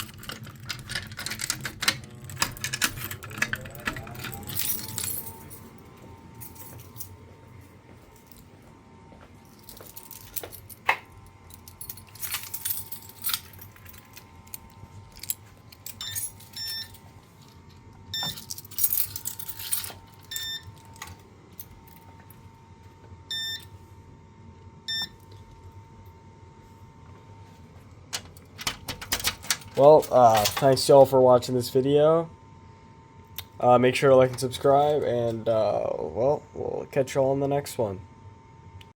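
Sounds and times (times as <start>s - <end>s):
keys jangling: 0.0s - 7.2s, 9.4s - 17.1s, 18.2s - 22.1s, 28.2s - 30.8s.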